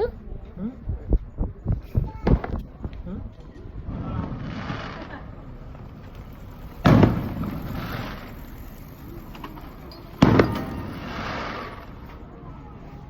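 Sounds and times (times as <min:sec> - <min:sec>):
fireworks shells bursting: 0:04.2 - 0:12.3.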